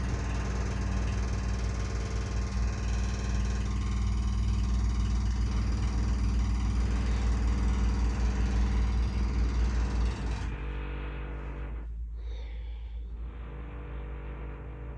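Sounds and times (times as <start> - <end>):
construction machinery rumbling: 0.0 - 11.8.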